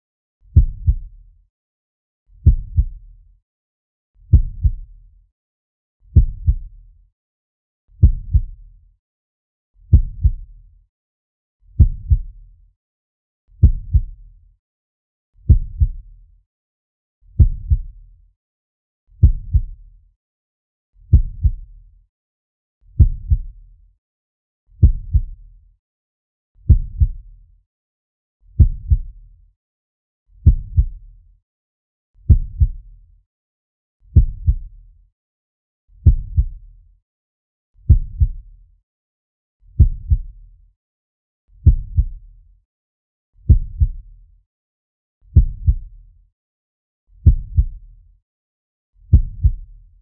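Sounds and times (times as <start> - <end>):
heartbeat double thump: 0.6 - 1.0, 2.4 - 2.9, 4.3 - 4.8, 6.2 - 6.6, 8.0 - 8.5, 9.9 - 10.4, 11.8 - 12.3, 13.6 - 14.1, 15.5 - 16.0, 17.4 - 17.9, 19.2 - 19.7, 23.0 - 23.5, 24.8 - 25.3, 26.7 - 27.2, 28.6 - 29.1, 30.4 - 30.9, 32.3 - 32.8, 34.2 - 34.6, 36.0 - 36.6, 37.9 - 38.3, 39.8 - 40.3, 41.6 - 42.1, 43.5 - 44.0, 45.4 - 45.9, 47.2 - 47.7, 49.1 - 49.6.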